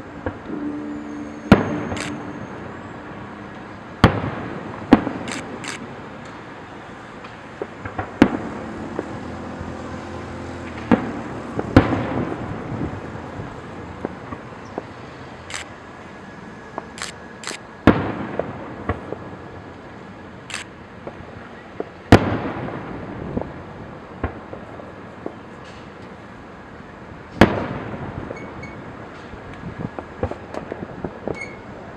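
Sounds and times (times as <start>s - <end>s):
fireworks bangs with echo: 1.3s - 6.6s, 7.2s - 9.7s, 10.6s - 15.0s, 17.8s - 19.6s, 21.0s - 25.6s, 27.3s - 31.7s.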